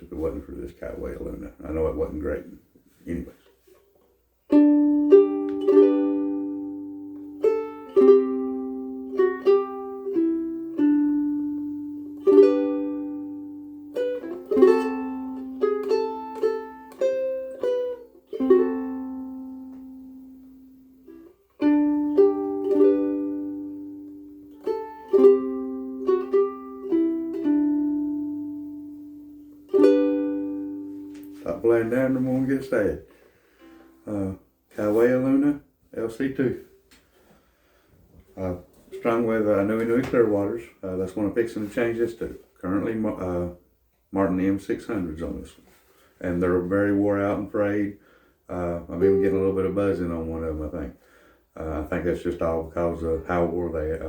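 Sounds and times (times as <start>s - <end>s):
fingerpicked ukulele tune: 3.6s - 32.5s, 33.5s - 35.0s, 48.7s - 50.4s.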